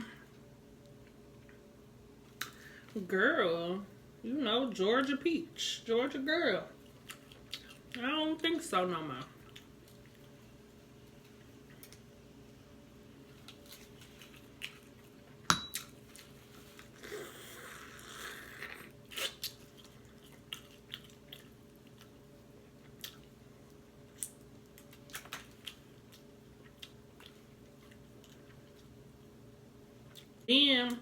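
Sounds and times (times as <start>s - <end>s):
person chewing seafood: 6.8s - 8.0s, 13.4s - 15.3s, 16.0s - 23.4s, 24.1s - 28.9s.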